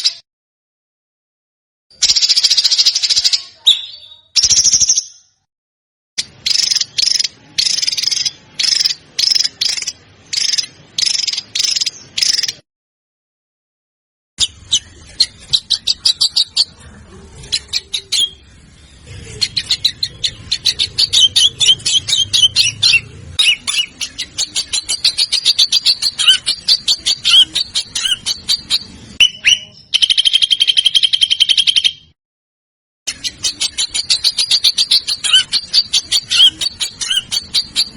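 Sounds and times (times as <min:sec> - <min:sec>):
songbird singing staccato notes: 0:14.4 - 0:32.1, 0:33.1 - 0:37.9.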